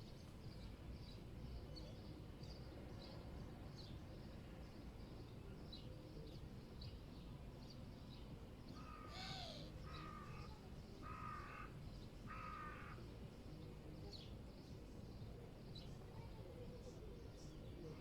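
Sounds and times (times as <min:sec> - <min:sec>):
low city rumble: 0:00.0 - 0:18.0
small birds chirping: 0:00.0 - 0:18.0
crow cawing: 0:08.8 - 0:13.0.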